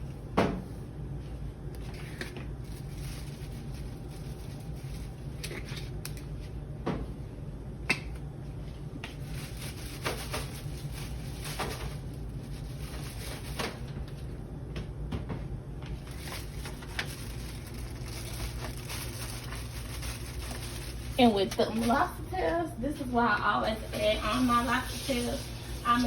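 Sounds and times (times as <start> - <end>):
steady low hum: 0.0 - 26.0
hands handling plastic bag: 1.8 - 6.2, 9.1 - 14.0, 16.0 - 22.6.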